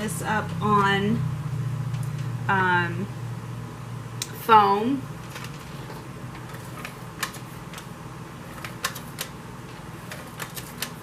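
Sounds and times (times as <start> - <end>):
steady low hum: 0.0 - 11.0
paper clicks and taps: 6.4 - 7.9, 8.5 - 11.0.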